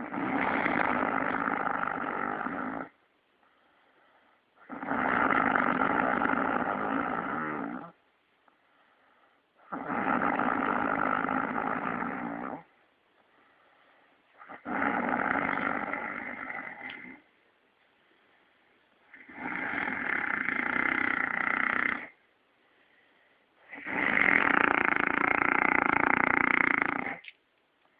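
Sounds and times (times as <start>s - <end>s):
man snoring heavily: 0.0s - 3.0s, 4.6s - 8.0s, 9.7s - 12.7s, 14.4s - 17.2s, 19.1s - 22.2s, 23.6s - 27.2s
quiet breaths: 0.0s - 27.9s.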